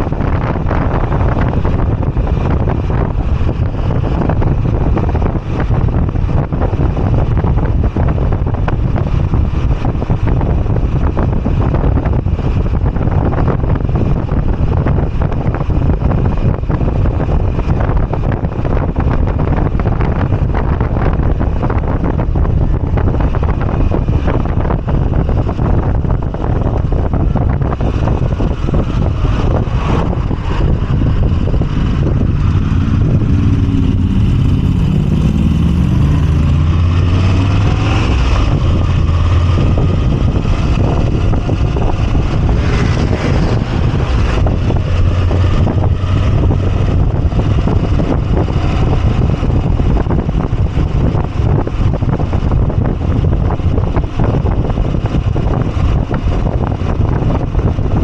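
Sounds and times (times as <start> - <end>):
motorcycle engine running: 0.0 - 58.0
wind rush on microphone: 0.0 - 58.0.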